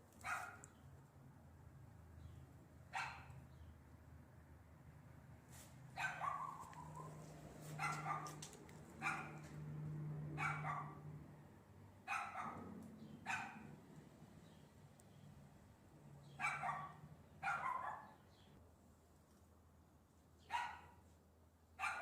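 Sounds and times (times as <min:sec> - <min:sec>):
dog barking: 0:00.2 - 0:00.7, 0:02.9 - 0:03.4, 0:06.0 - 0:09.6, 0:10.3 - 0:11.1, 0:12.0 - 0:13.8, 0:16.4 - 0:18.2, 0:20.5 - 0:21.0, 0:21.8 - 0:22.0.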